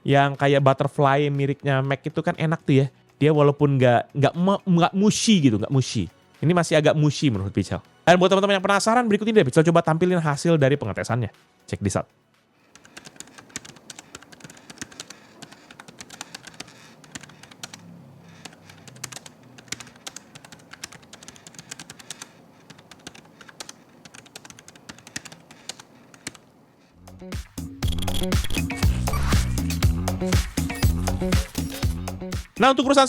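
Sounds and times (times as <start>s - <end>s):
soft typing on membrane keyboard: 12.6s - 26.9s.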